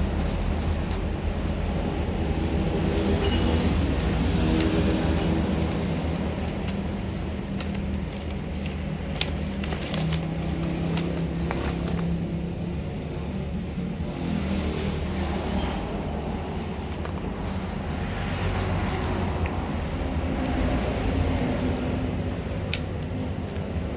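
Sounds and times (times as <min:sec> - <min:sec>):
low mechanical rumble with hum: 0:00.0 - 0:23.9.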